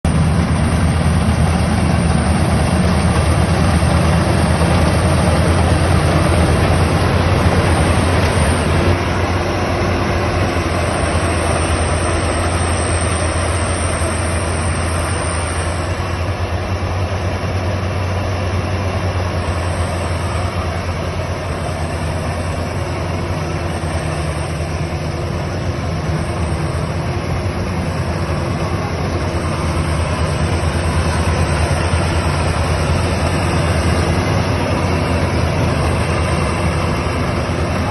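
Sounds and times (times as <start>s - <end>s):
small engine running: 0.1s - 37.9s.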